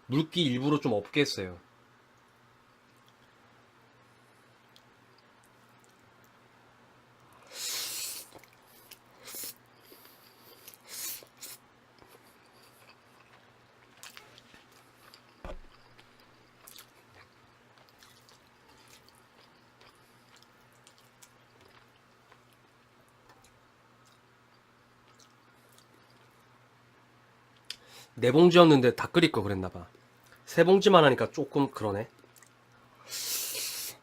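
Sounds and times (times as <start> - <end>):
chewing noodles: 7.2 - 26.5.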